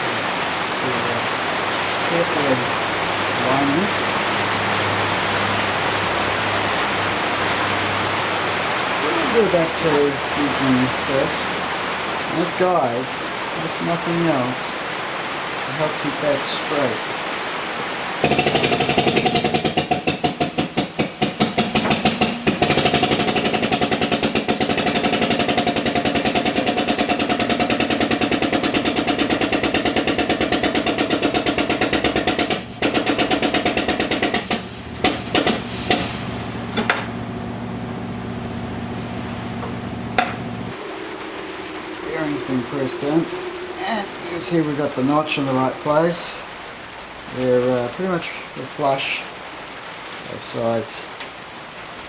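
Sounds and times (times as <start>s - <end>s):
steady pitched hum: 17.6s - 47.4s
workshop press pulsing: 17.8s - 40.9s.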